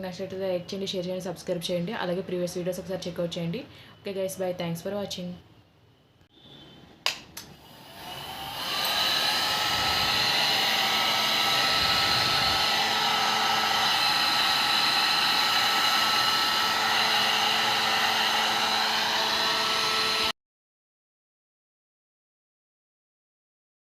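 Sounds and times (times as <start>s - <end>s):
hair dryer blowing: 7.4s - 20.4s.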